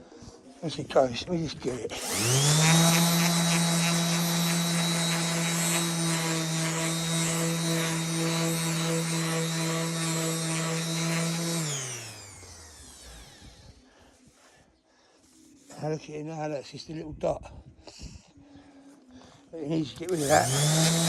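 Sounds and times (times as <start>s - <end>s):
electric sander running: 1.9s - 13.6s, 20.0s - 21.0s.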